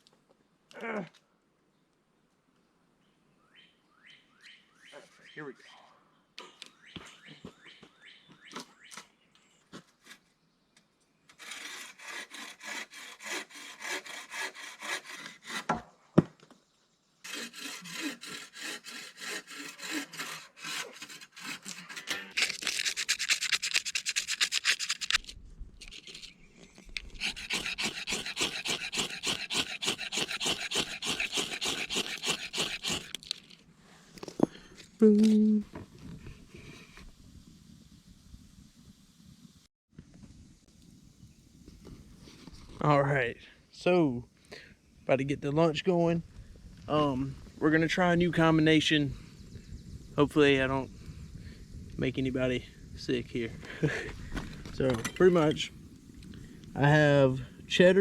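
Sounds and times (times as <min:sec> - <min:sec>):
hand saw cutting wood: 0:11.3 - 0:15.8, 0:17.2 - 0:25.2, 0:27.1 - 0:33.3.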